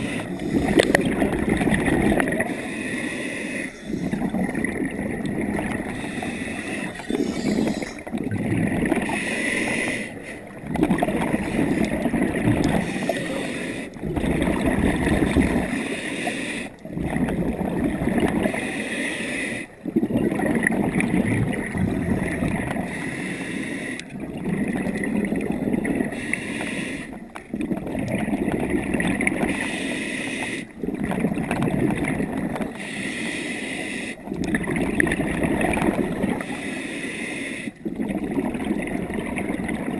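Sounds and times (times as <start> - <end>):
gurgling exhaust bubbles: 0.0 - 2.6, 3.8 - 9.2, 10.6 - 13.2, 13.9 - 15.8, 16.8 - 18.6, 19.8 - 22.9, 24.1 - 26.1, 27.4 - 29.6, 30.7 - 32.8, 34.3 - 36.4, 37.8 - 39.9
regulator inhale hiss: 26.2 - 27.2, 32.8 - 34.2, 36.4 - 37.8.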